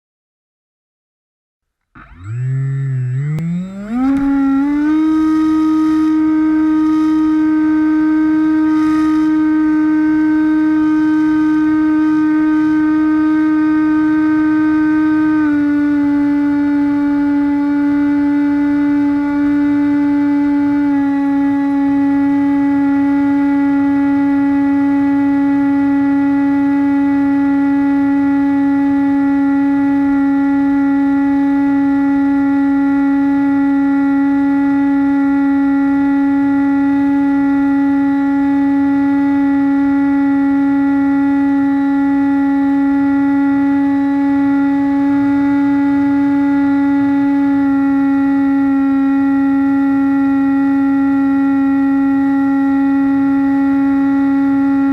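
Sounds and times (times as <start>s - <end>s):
electric motor propeller buzzing: 2.0s - 28.5s.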